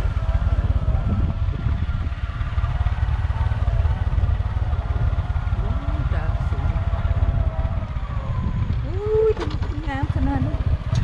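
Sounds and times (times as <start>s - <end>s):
motorcycle running: 0.0s - 11.0s
wind buffeting microphone: 0.0s - 11.0s.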